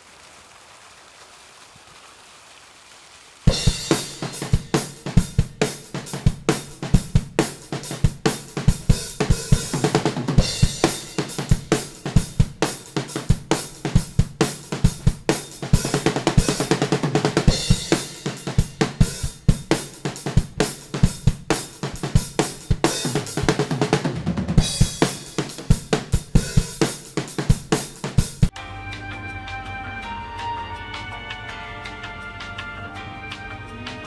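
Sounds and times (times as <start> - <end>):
drum kit playing fast rhythm: 3.5 - 29.3.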